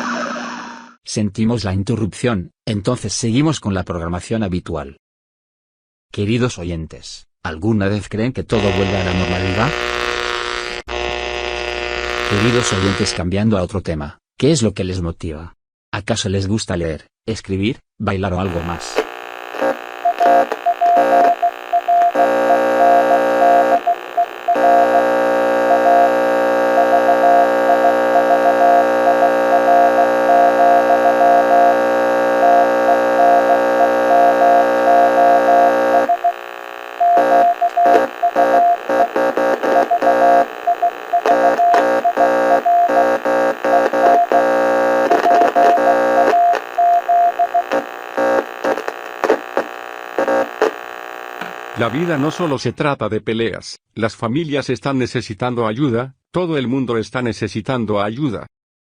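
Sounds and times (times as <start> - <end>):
buzzing radio drone: 8.6 - 13.2, 18.5 - 52.7
morse code beeping: 20.0 - 36.4, 37.0 - 47.8.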